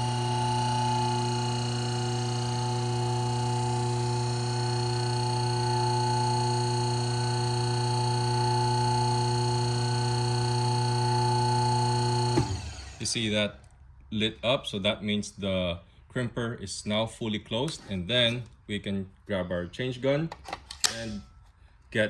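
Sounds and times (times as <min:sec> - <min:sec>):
pump motor humming: 0:00.0 - 0:13.1.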